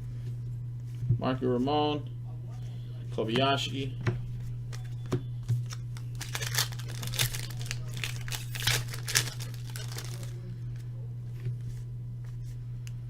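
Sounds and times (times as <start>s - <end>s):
low electrical hum: 0.0s - 13.0s
foil wrappers crinkling: 4.8s - 10.6s.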